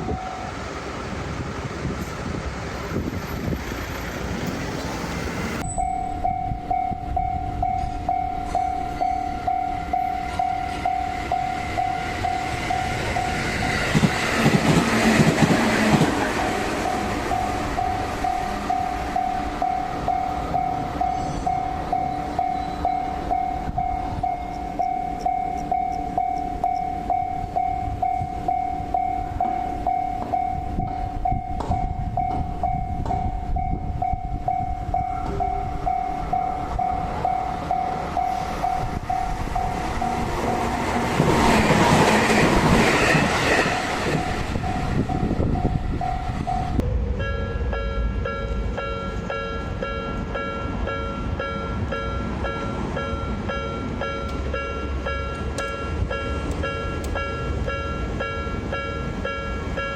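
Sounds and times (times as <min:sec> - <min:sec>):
level crossing warning bell ringing: 0:00.0 - 0:00.7, 0:05.6 - 0:14.0, 0:16.8 - 0:40.9, 0:42.2 - 0:59.9
train passing: 0:00.0 - 0:59.9.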